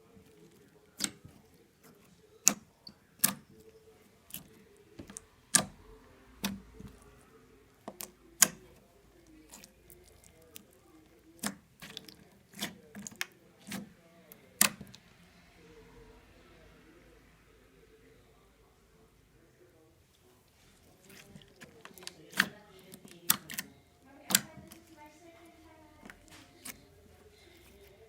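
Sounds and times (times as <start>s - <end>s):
slime clicking and popping: 0.5s - 1.3s, 21.0s - 23.7s.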